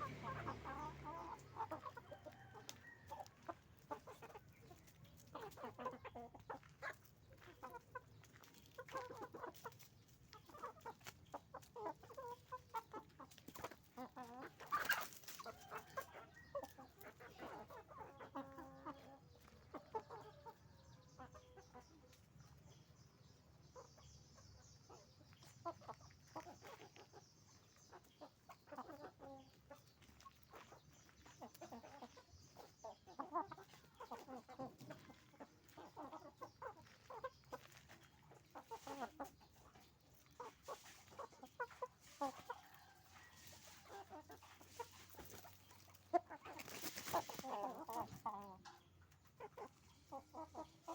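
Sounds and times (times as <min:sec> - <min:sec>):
hens and roosters clucking: 0:00.0 - 0:50.9.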